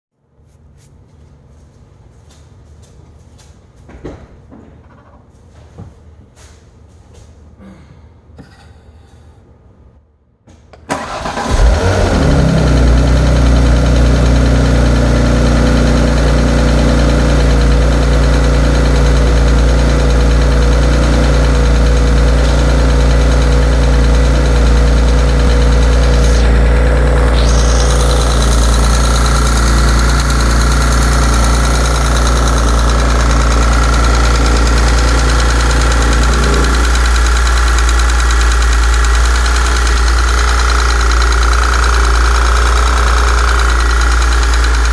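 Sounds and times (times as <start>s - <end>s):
car engine starting and idling: 10.7s - 44.9s.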